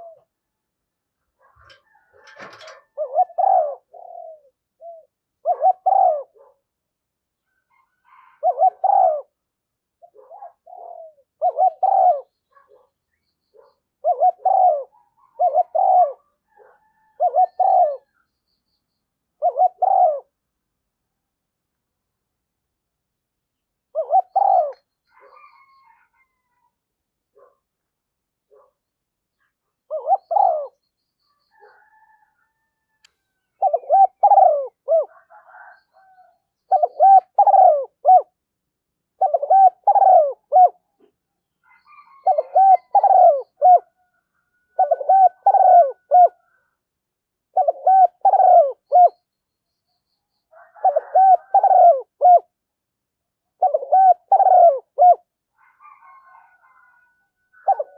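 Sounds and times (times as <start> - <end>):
dove cooing: 0.0 - 0.4, 1.4 - 6.6, 7.7 - 9.4, 10.0 - 12.9, 13.6 - 18.2, 19.4 - 20.4, 23.9 - 26.4, 29.9 - 30.8, 33.6 - 38.4, 39.2 - 40.8, 41.7 - 46.6, 47.5 - 49.2, 50.5 - 52.6, 53.5 - 57.9.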